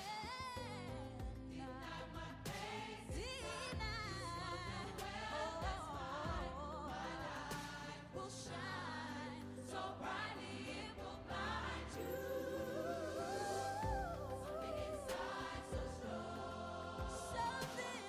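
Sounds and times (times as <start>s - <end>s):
voices singing together: 0.0s - 18.0s
person singing: 12.0s - 18.0s
steady bass: 13.8s - 17.8s.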